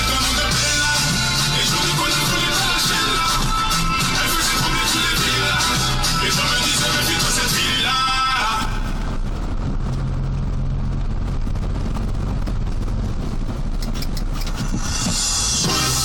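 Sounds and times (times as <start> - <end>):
music: 0.0 - 9.0, 14.4 - 16.0
vehicle engine running: 0.0 - 16.0.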